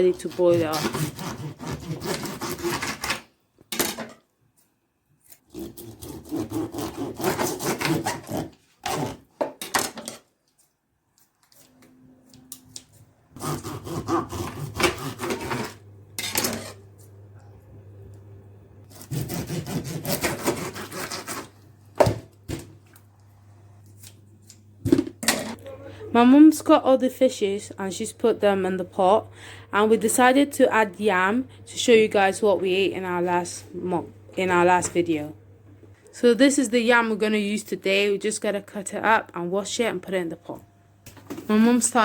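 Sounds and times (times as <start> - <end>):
knife sawing through fish: 0.2 - 3.2, 5.5 - 9.2, 13.4 - 15.8, 18.9 - 21.5.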